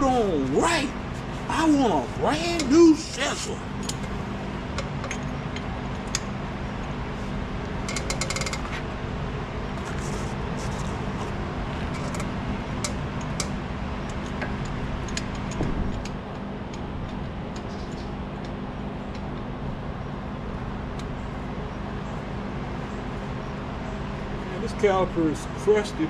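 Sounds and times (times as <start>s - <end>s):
steady low hum: 0.0s - 26.0s
metal tools clinking: 3.4s - 4.2s
rattling clicks: 7.8s - 8.7s.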